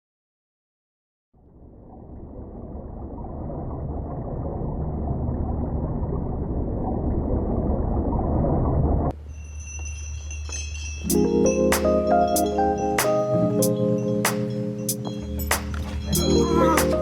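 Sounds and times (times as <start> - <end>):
chiming music: 9.1 - 17.0.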